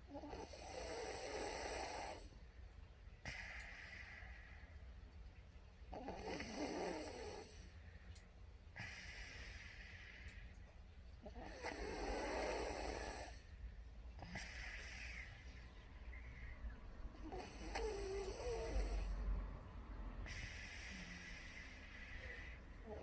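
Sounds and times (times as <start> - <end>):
deep rattling snore: 0.1 - 2.4, 5.9 - 7.7, 11.3 - 13.5, 17.2 - 19.6, 20.2 - 23.0
hissing breath: 14.2 - 19.6, 20.2 - 23.0.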